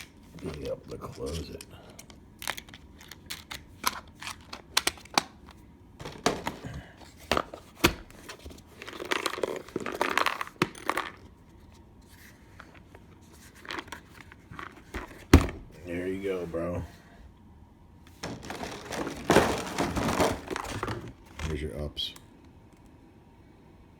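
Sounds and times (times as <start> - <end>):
rustling and scraping: 6.0 - 15.3, 18.1 - 21.6.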